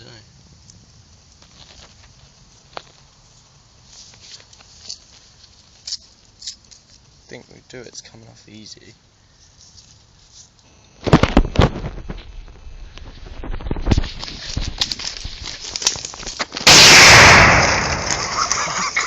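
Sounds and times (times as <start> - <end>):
fireworks crackling and popping: 0.0 - 7.2, 9.8 - 19.0
loud explosive bang: 16.6 - 18.6.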